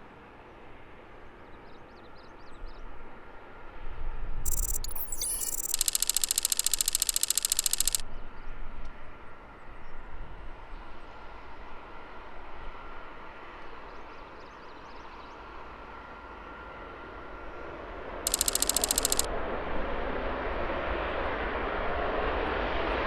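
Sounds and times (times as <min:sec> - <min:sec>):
harsh buzz: 0:04.5 - 0:08.0, 0:18.3 - 0:19.3.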